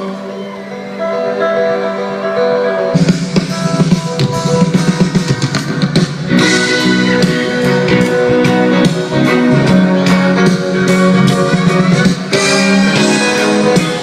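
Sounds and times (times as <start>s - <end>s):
guitars: 0.0s - 14.0s
steady drum beat: 3.0s - 14.0s.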